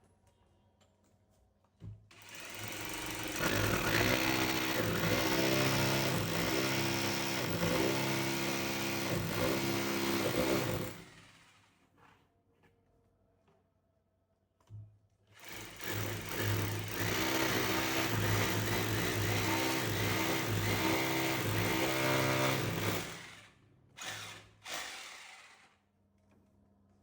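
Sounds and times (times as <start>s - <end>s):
power drill running: 2.1s - 11.7s, 15.4s - 25.8s.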